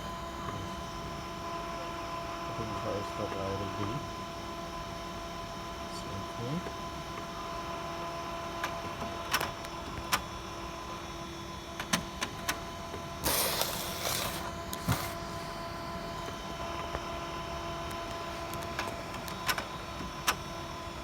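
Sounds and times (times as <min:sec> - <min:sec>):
printer rushing burst: 0:13.2 - 0:15.5.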